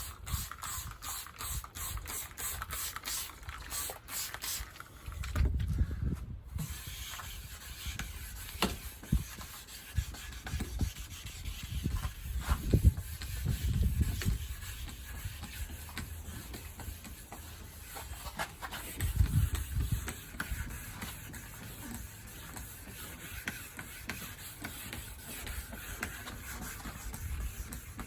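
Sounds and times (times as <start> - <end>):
sandpaper rubbing: 6.6 - 28.0.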